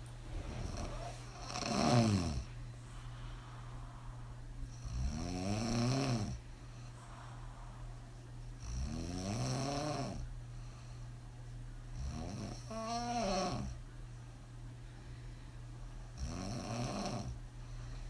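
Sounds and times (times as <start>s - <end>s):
quiet breathing: 0.0s - 8.9s, 9.9s - 14.0s, 14.6s - 18.0s
woman snoring: 0.6s - 2.5s, 4.7s - 6.4s, 8.6s - 10.3s, 12.0s - 13.8s, 16.2s - 17.4s.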